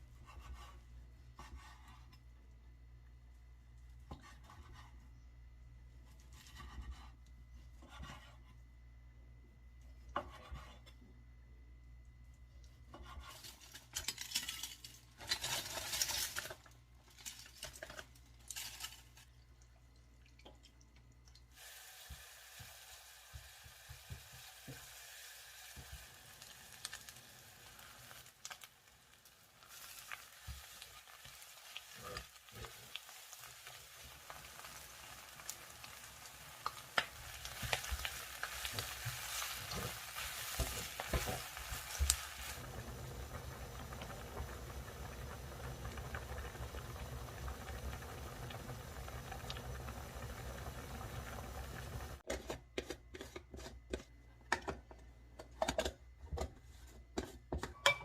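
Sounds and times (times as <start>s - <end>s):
food sizzling in a pan: 21.5s - 52.3s.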